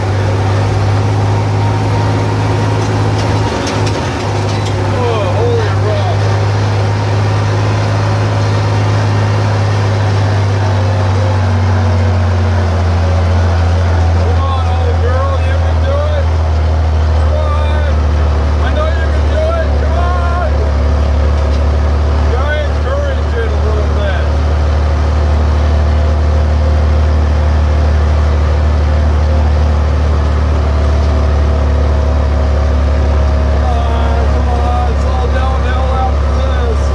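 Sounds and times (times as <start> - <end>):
tractor engine droning: 0.0 - 36.9.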